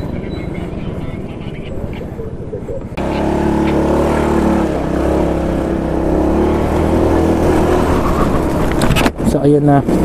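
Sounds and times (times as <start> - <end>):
motorcycle engine under throttle: 3.0 - 10.0.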